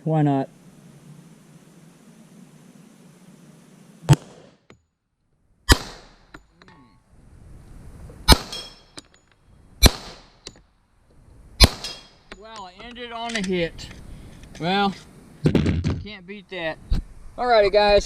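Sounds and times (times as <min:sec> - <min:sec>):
handgun shots: 0:05.7 - 0:06.2, 0:08.3 - 0:08.7, 0:09.8 - 0:10.3, 0:11.6 - 0:12.1.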